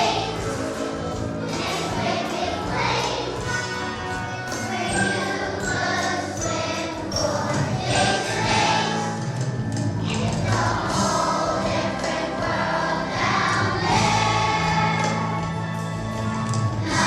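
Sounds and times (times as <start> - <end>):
children's choir singing: 0.0 - 17.0
musical accompaniment: 0.0 - 17.0.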